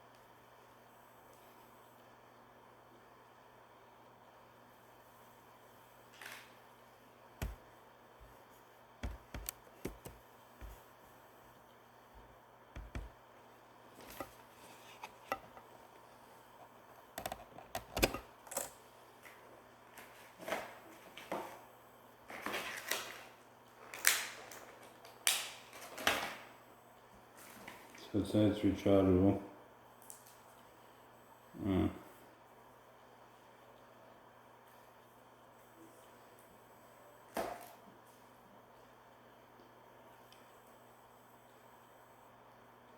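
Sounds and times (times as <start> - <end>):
plastic items being handled: 9.0 - 10.8, 12.8 - 13.1, 17.0 - 18.7.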